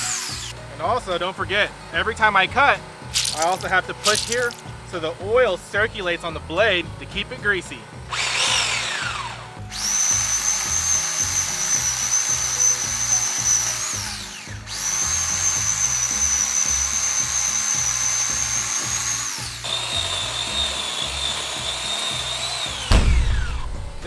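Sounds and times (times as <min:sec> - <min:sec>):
electric chainsaw cutting a log: 0:00.0 - 0:00.6, 0:03.2 - 0:04.6, 0:08.1 - 0:23.5
background music: 0:00.0 - 0:24.0.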